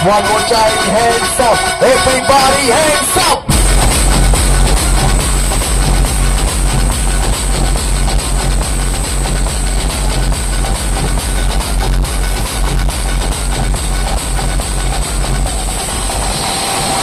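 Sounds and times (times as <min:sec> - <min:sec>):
heavy bass beat: 0:00.0 - 0:17.0
loud dance music: 0:00.0 - 0:17.0.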